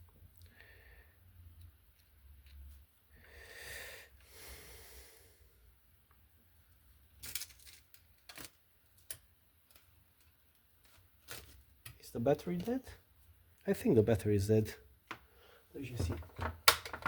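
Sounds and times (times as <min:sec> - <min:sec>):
breathy exhale: 0:03.2 - 0:05.6.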